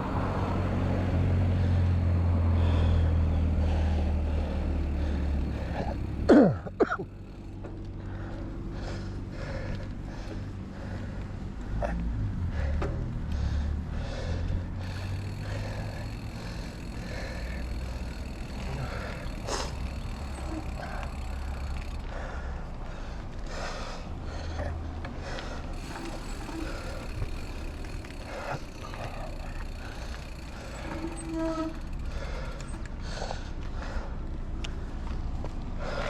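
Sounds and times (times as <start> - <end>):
bike rolling on dirt trail: 0.0 - 36.0
heavy breathing: 1.0 - 36.0
bike rattles and knocks: 4.8 - 11.2, 11.8 - 23.6, 24.5 - 34.1
bike squeak: 14.8 - 22.0, 25.8 - 32.8.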